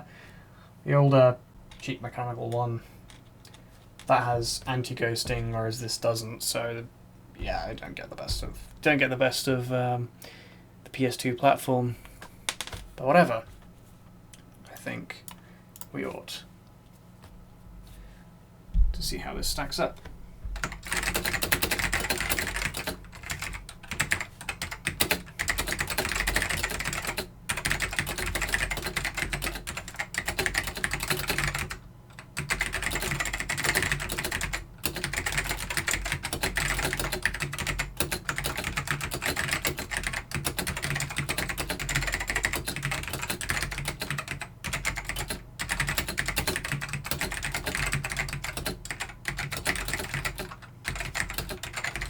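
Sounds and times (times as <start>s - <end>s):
mechanical keyboard typing: 20.6s - 52.0s.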